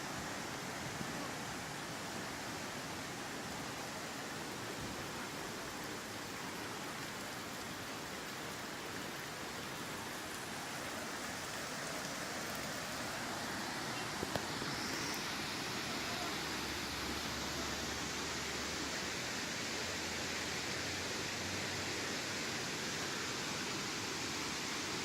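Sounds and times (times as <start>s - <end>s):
waterfall rushing: 0.0s - 25.0s.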